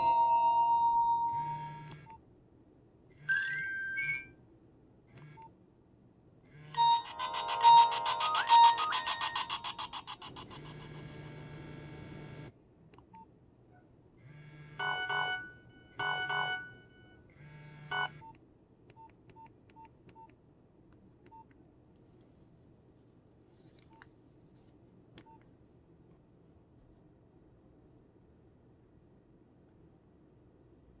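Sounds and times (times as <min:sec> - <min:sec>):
mobile phone electronic tones: 0:00.0 - 0:02.0, 0:06.7 - 0:10.6, 0:14.7 - 0:18.2.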